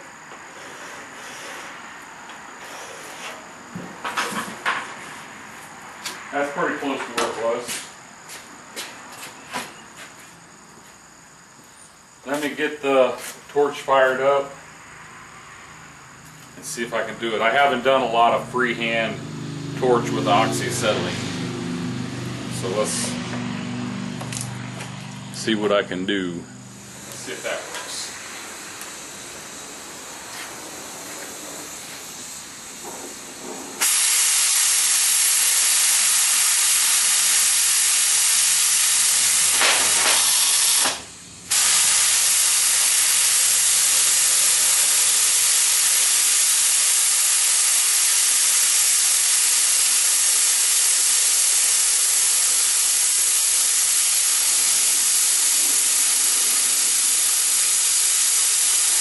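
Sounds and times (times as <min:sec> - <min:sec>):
cutting torch hissing: 0:00.0 - 0:04.8, 0:16.4 - 0:23.3, 0:26.7 - 0:59.0.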